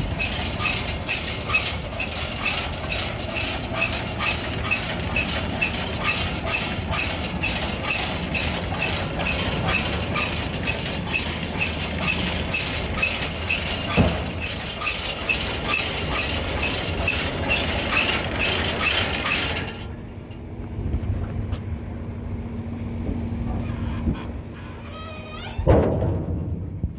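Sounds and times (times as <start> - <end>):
machine drive hum: 0.0 - 21.0
baler mechanical clacking: 0.0 - 21.7.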